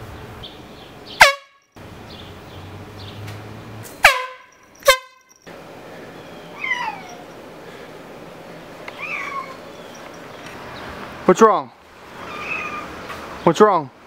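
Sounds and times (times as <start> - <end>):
air horn blasts: 1.2 - 1.6, 4.0 - 5.3.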